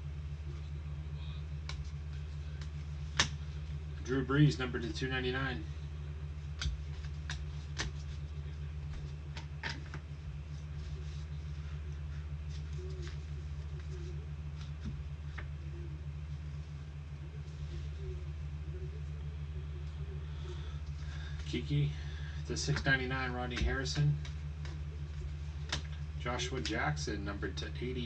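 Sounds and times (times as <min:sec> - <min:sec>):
steady low hum: 0:00.0 - 0:28.0
trading cards being handled: 0:06.4 - 0:19.0.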